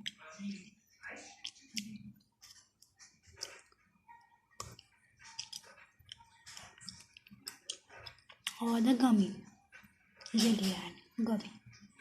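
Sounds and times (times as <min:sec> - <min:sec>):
mouth chewing candy: 0:04.5 - 0:08.6.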